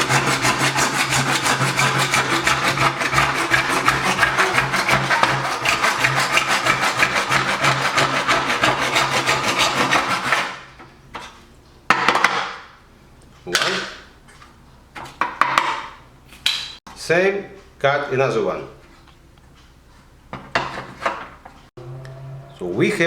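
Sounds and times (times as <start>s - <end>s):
hand saw cutting plastic: 0.0s - 10.8s.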